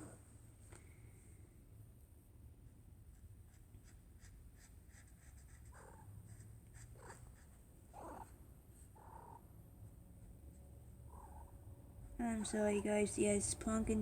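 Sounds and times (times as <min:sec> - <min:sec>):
scratching strokes of colouring on paper: 0:02.6 - 0:09.1.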